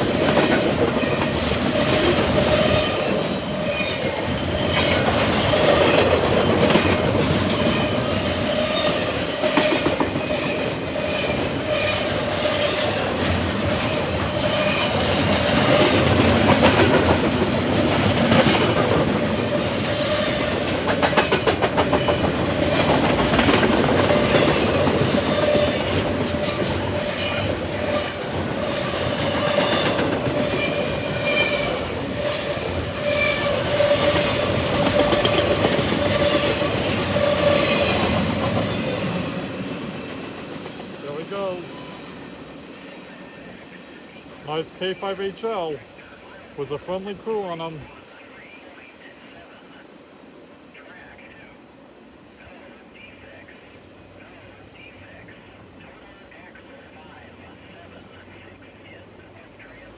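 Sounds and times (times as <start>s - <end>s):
wheels ringing on rail: 0.0s - 46.1s
freight train rumbling past: 0.0s - 59.9s.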